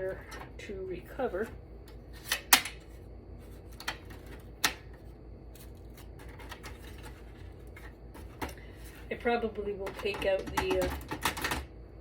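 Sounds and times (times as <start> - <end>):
low steady hum: 0.0 - 12.0
computer parts clicking and knocking: 9.8 - 11.7.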